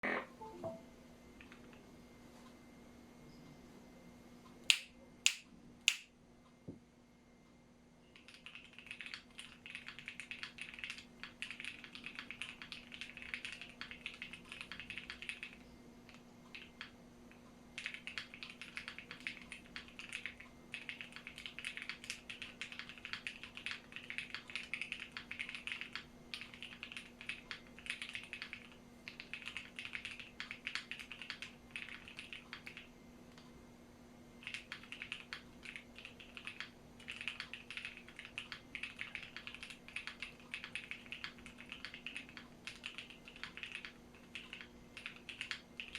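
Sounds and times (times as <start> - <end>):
mechanical keyboard typing: 8.2 - 16.9, 17.8 - 33.4, 34.4 - 45.9.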